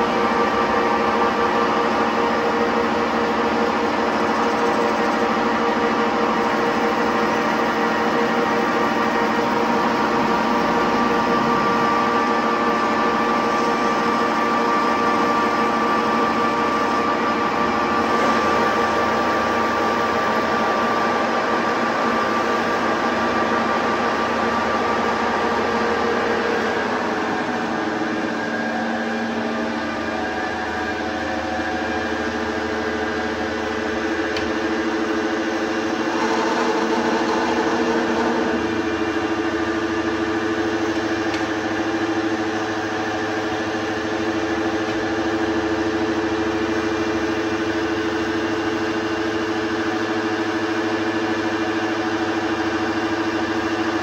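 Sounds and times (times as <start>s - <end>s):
metal lathe humming and whining: 0.0s - 54.0s.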